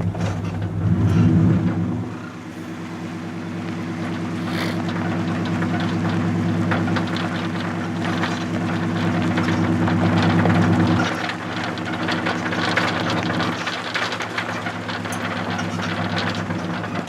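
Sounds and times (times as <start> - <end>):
vehicle engine idling: 0.0 - 17.0
faint clicks and crackles: 3.6 - 17.0.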